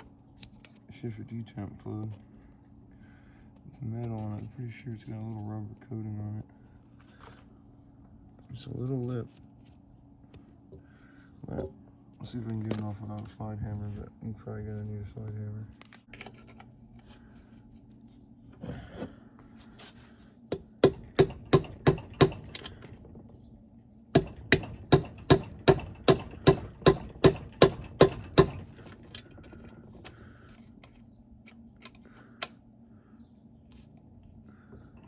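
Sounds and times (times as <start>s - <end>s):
hammer striking metal: 20.5s - 22.6s, 24.1s - 28.8s.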